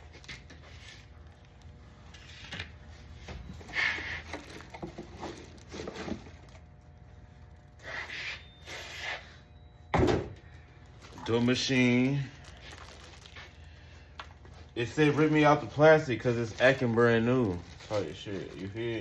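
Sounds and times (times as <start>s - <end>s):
packaging rustling: 0.0s - 7.8s, 10.4s - 19.0s
parts and packaging scraping: 0.0s - 9.5s, 10.4s - 19.0s.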